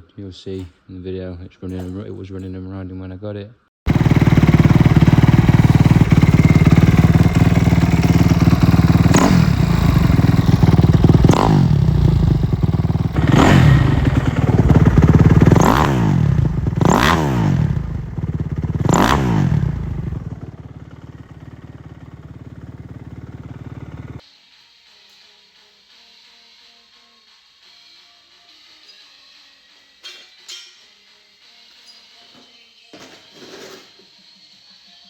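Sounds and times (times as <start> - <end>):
dirt bike engine revving: 3.9 - 24.2.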